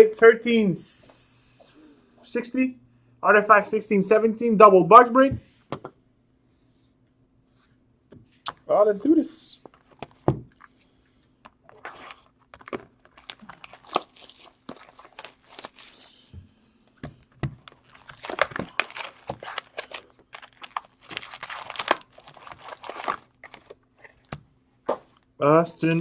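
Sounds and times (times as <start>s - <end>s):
plastic wrapping tearing and crinkling: 11.7s - 16.2s, 17.6s - 24.2s, 25.8s - 26.0s.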